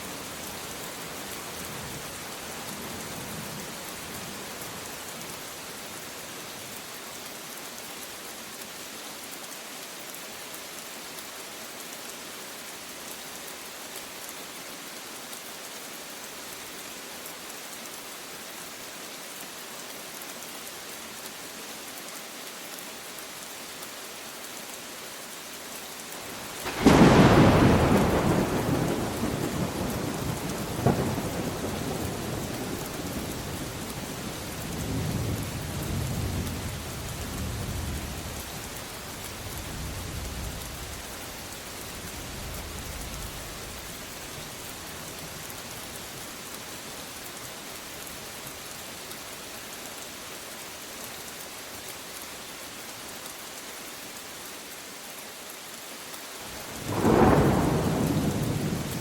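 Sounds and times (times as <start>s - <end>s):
steady rain falling: 0.0s - 59.0s
thunder: 26.6s - 32.6s, 56.7s - 59.0s.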